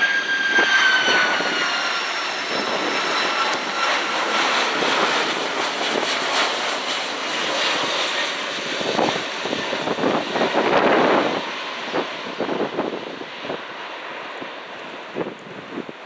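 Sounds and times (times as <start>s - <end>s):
jet airliner engines: 0.0s - 16.0s
wind buffeting microphone: 0.3s - 16.0s.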